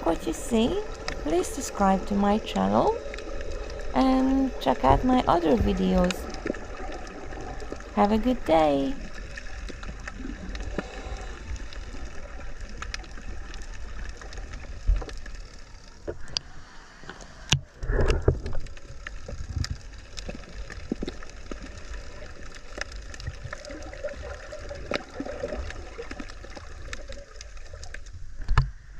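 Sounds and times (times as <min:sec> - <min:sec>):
constant low rumble: 0:00.0 - 0:23.8
seawater sloshing and gurgling: 0:16.9 - 0:28.0.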